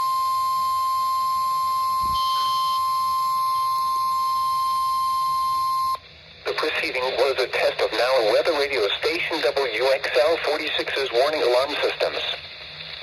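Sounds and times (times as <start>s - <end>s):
warning alarm tone: 0.0s - 6.0s.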